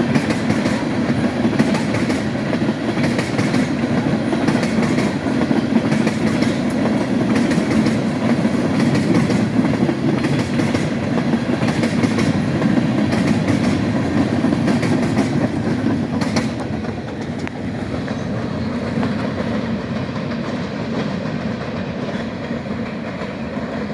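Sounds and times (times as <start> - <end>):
wheels clicking over rail joints: 0.0 - 18.4
freight train rumbling: 0.0 - 23.9.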